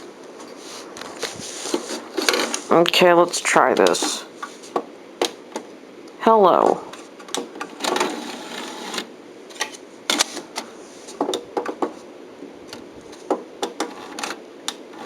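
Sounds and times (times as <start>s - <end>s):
rustling and scraping: 0.0s - 2.9s, 3.8s - 4.9s, 9.6s - 12.1s.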